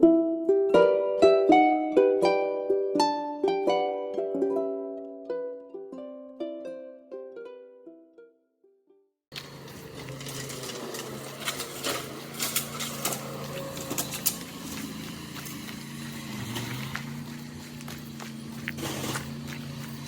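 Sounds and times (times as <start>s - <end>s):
low mechanical hum: 9.4s - 20.0s.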